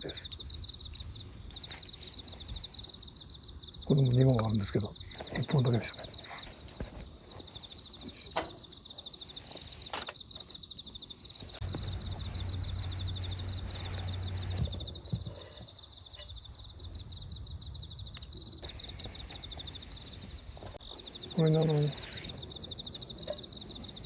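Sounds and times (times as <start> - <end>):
insect trilling chorus: 0.0 - 24.0
low hum: 11.6 - 15.1.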